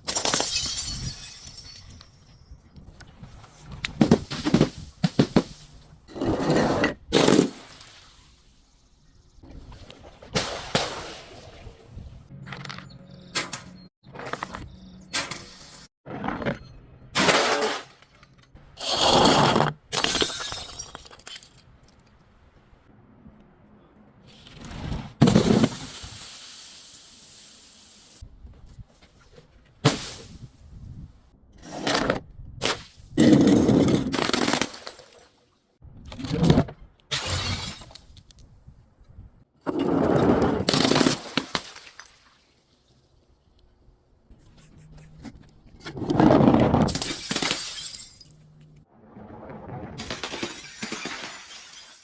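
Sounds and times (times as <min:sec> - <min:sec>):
glass bottles breaking: 0:00.0 - 0:02.5, 0:17.2 - 0:18.0, 0:19.9 - 0:21.6, 0:37.1 - 0:38.0, 0:46.9 - 0:48.4, 0:50.0 - 0:52.0
objects crushed cracking: 0:49.9 - 0:52.0.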